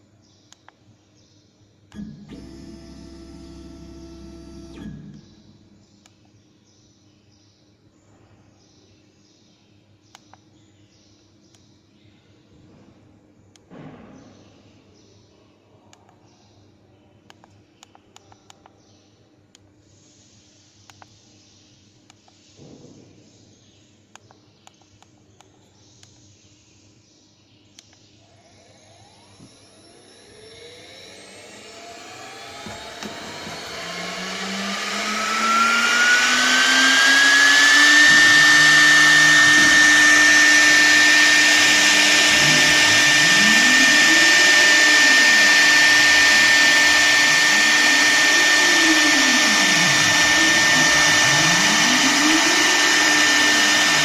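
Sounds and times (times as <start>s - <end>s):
lower motor tone swooping: 2.0s - 5.6s, 28.6s - 54.0s
router spindle motor whine: 2.0s - 5.6s, 28.6s - 54.0s.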